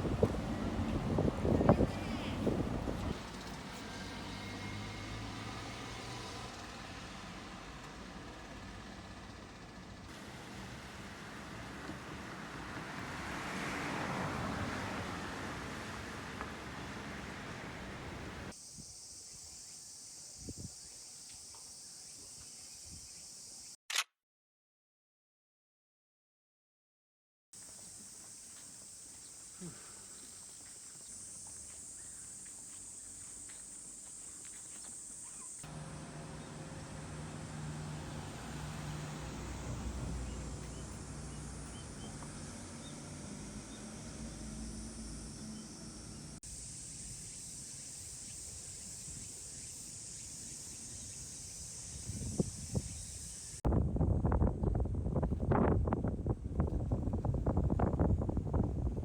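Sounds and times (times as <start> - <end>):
rushing outdoor noise: 0.0 - 6.8, 10.1 - 18.6, 27.9 - 59.0
insects buzzing: 0.0 - 23.8, 27.6 - 53.6.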